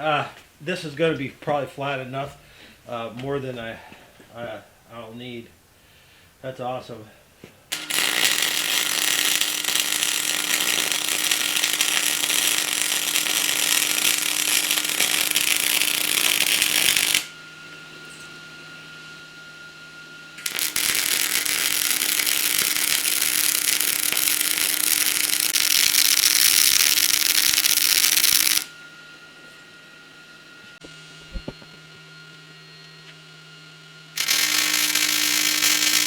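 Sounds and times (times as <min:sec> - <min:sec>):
angle grinder grinding steel: 0:07.7 - 0:17.3, 0:20.4 - 0:28.7, 0:34.2 - 0:36.0.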